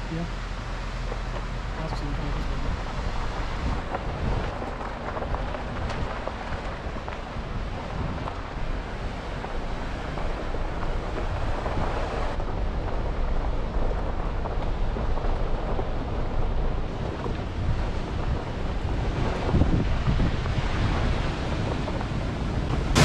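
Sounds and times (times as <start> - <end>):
steady rushing noise: 0.0 - 23.0
wind buffeting microphone: 0.1 - 23.0.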